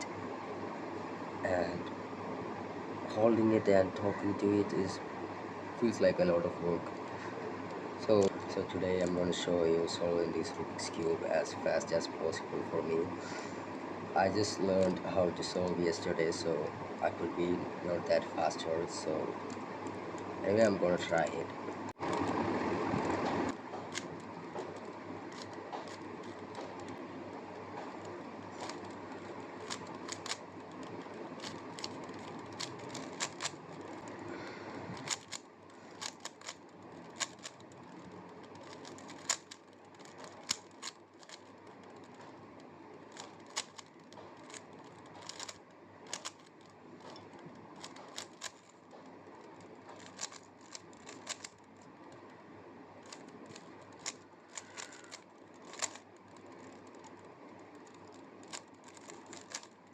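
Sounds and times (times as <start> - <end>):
puzzle cube clicking as twisted: 22.0 - 22.4, 23.0 - 34.2, 34.9 - 42.3, 43.0 - 52.3, 53.0 - 59.9.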